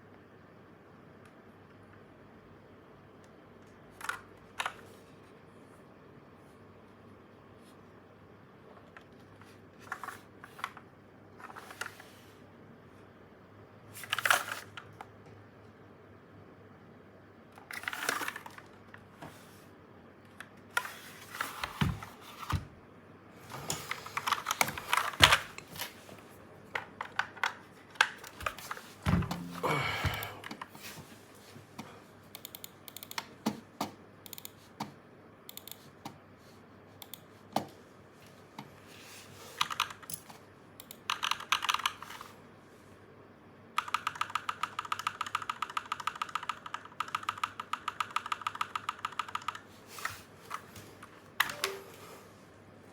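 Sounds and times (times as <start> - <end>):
heavy thump: 29.1 - 30.2
mechanical keyboard key clicks: 32.4 - 33.2.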